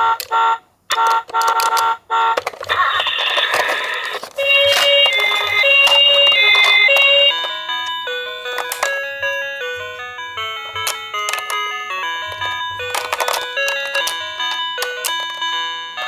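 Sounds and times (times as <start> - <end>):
two-tone ambulance siren: 1.0 - 16.0
chiming melody: 5.1 - 16.0.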